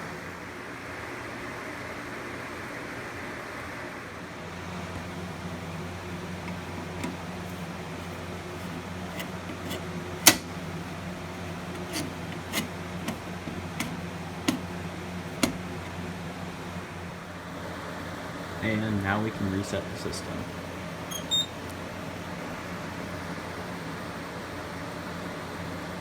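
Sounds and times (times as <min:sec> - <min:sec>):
irregular clicks and knocks: 0:06.3 - 0:16.0.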